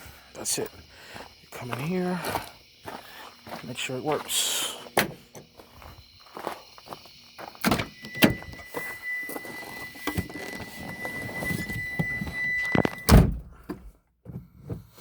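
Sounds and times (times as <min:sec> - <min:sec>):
high warning tone: 0:00.4 - 0:13.1
car door shutting: 0:05.0 - 0:05.5, 0:07.6 - 0:13.9.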